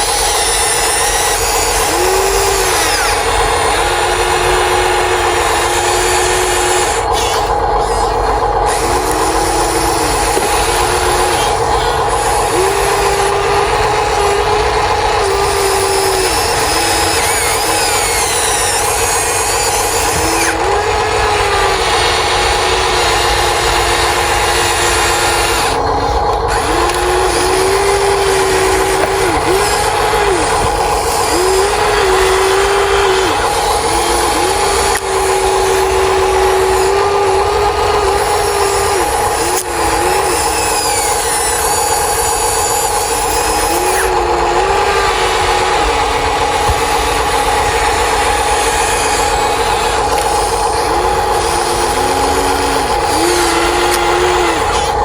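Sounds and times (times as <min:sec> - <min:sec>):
small electric motors whining: 0:00.0 - 0:55.0
steady high hum: 0:00.0 - 0:55.0.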